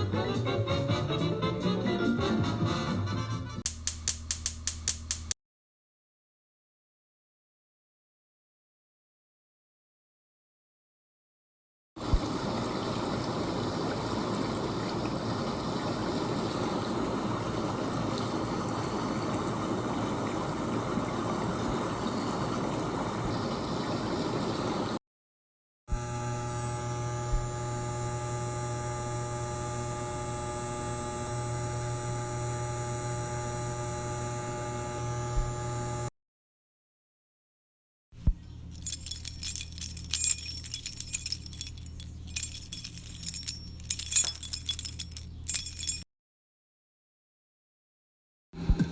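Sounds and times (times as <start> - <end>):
machine hum: 25.9 - 36.1.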